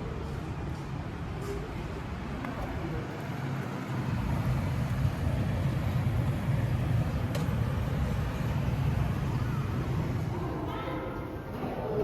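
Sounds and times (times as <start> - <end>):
distant road traffic rumble: 0.0 - 12.0.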